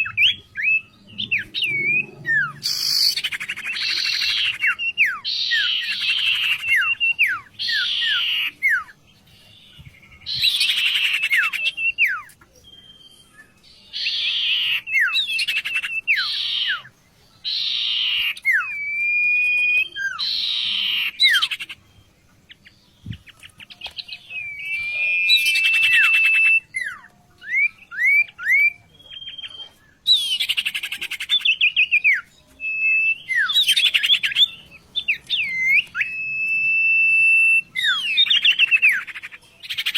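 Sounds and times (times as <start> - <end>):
songbird chattering and whistling: 0.0 - 39.9.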